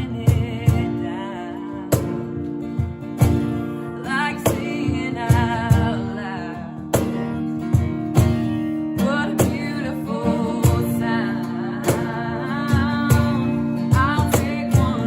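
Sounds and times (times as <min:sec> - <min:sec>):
acoustic guitar: 0:00.0 - 0:15.0
woman singing: 0:00.0 - 0:15.0
drum hits: 0:07.0 - 0:08.5.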